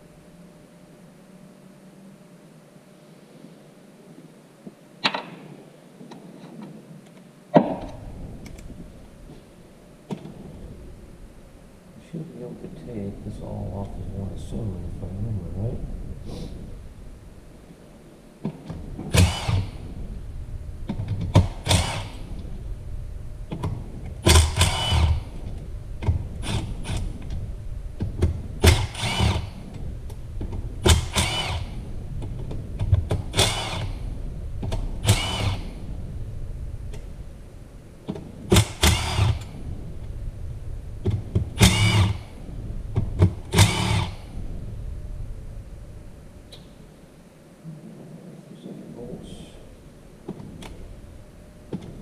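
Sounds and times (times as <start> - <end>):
power ratchet whine: 18.4 - 20.0, 20.9 - 22.7, 23.5 - 35.9, 38.1 - 40.1, 41.0 - 44.4.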